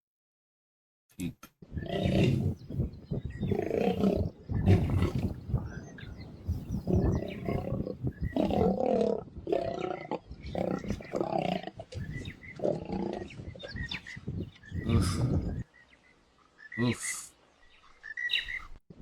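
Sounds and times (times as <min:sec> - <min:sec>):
lion roaring: 0:01.8 - 0:02.7, 0:03.4 - 0:05.8, 0:06.5 - 0:13.9.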